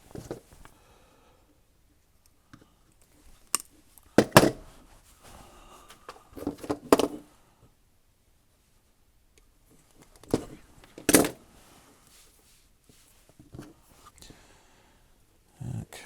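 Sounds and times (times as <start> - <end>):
tools clattering on workbench: 4.2 - 4.6, 10.3 - 11.4.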